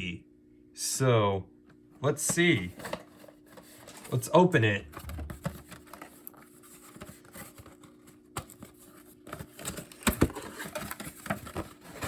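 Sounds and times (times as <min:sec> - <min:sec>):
packaging clicks and rustles: 0:05.0 - 0:12.0.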